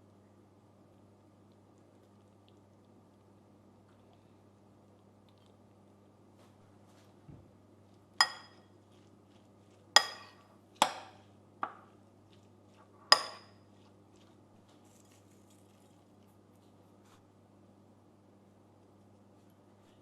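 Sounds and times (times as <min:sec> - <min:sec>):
tableware clinking: 0:08.2 - 0:08.6, 0:10.0 - 0:11.2, 0:13.1 - 0:13.6.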